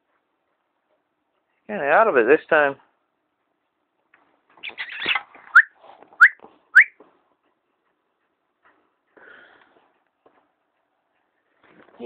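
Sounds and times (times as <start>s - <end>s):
person whistling calls: 5.5s - 7.0s.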